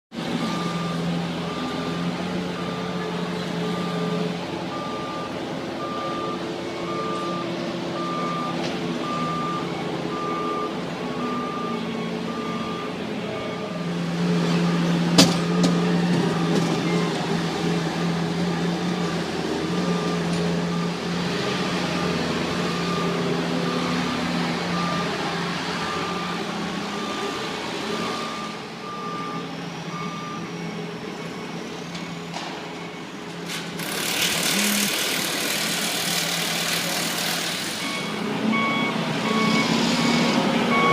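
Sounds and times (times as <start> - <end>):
back-up alarm beeping: 0.4 - 13.8, 37.8 - 40.9.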